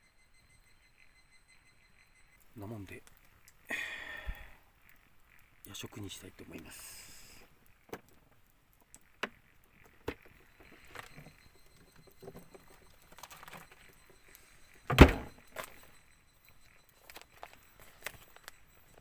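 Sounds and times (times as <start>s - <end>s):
loud thump: 14.9s - 15.3s.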